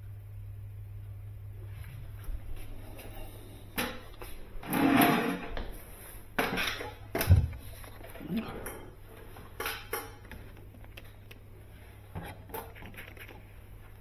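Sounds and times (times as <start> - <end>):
low steady hum: 0.0 - 14.0
objects knocking and clattering: 6.4 - 10.9.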